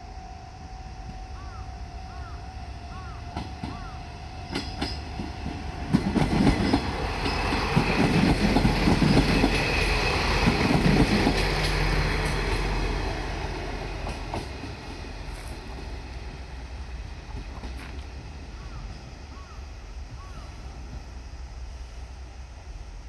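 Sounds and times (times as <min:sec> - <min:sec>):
wheels clattering over rail joints: 0:03.0 - 0:13.0, 0:13.8 - 0:19.1.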